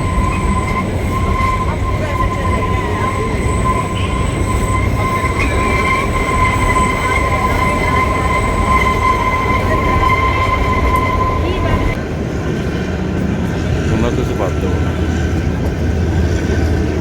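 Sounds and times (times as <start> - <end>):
train rumble: 0.0 - 17.0.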